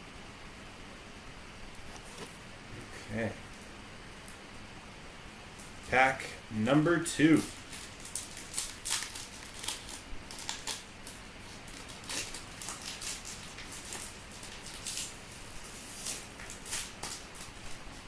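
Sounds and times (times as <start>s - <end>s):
wrapper and cards crinkling: 7.2s - 18.0s.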